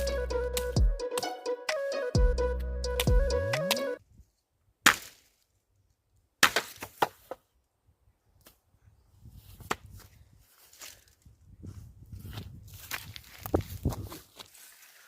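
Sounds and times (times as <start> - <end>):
wood being chopped: 4.8 - 5.3, 6.4 - 7.4
footsteps on forest litter: 9.4 - 15.0.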